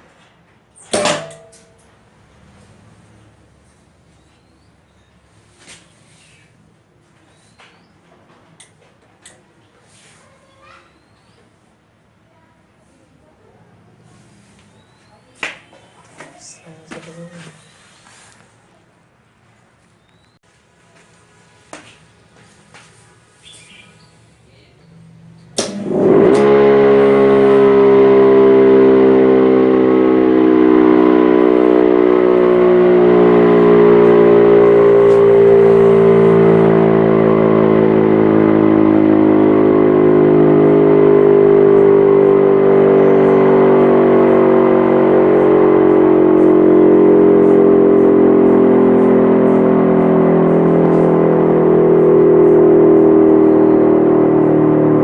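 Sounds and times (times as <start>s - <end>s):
electric motor siren: 25.6s - 55.0s.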